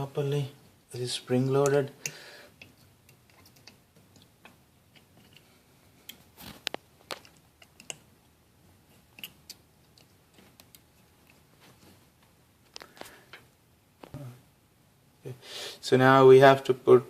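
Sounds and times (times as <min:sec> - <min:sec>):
small clicks and taps of faucet parts: 0:01.6 - 0:05.4, 0:06.1 - 0:08.1.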